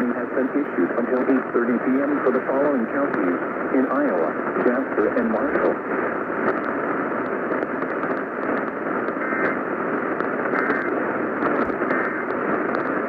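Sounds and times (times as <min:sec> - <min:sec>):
radio static hiss: 0:00.0 - 0:13.0
thin crackle: 0:05.5 - 0:13.0
two-tone data bursts: 0:09.2 - 0:09.6.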